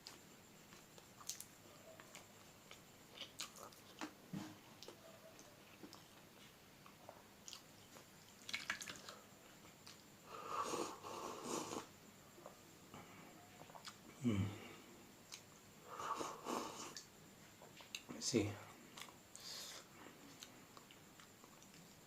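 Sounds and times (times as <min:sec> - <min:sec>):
person chewing with wet smacks: 0:00.0 - 0:10.1, 0:13.6 - 0:14.1, 0:18.9 - 0:22.0.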